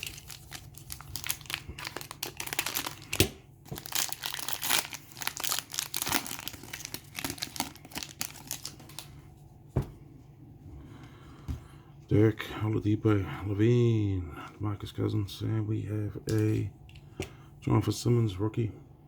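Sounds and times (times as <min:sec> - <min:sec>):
plastic wrapper crinkling and tearing: 0:00.0 - 0:09.2.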